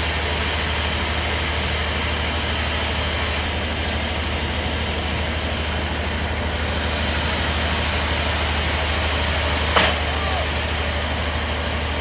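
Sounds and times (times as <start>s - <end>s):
bandsaw running: 3.5s - 12.0s.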